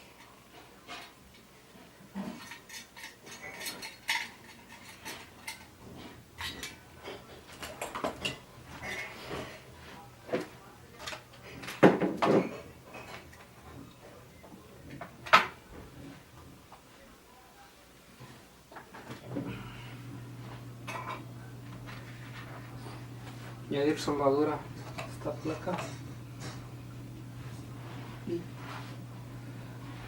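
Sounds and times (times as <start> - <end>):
tools clattering on a workbench: 2.1 - 8.9, 10.3 - 14.0, 14.9 - 15.6.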